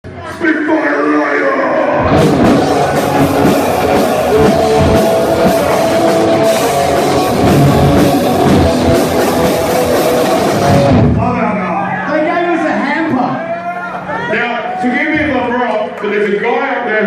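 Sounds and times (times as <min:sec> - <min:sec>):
distorted guitars: 0:01.6 - 0:11.6
heavy metal band playing live: 0:01.7 - 0:11.6
fast drum kit: 0:02.0 - 0:11.6.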